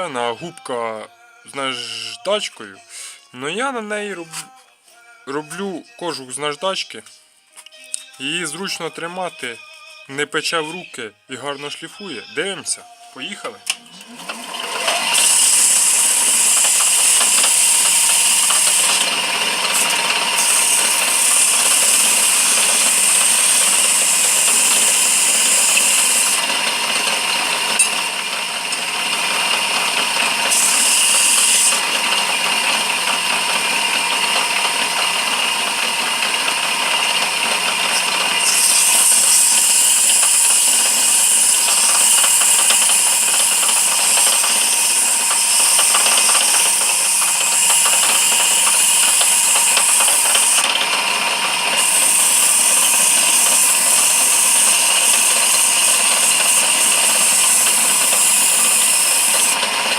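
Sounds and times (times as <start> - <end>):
lathe motor running: 13.4 - 59.9
sandpaper sanding hiss: 19.7 - 26.4, 38.5 - 50.6, 51.8 - 59.6.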